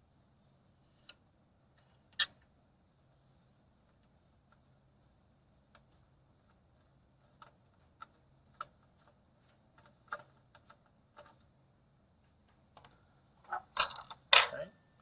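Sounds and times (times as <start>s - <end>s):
metal parts handled: 13.5s - 14.6s.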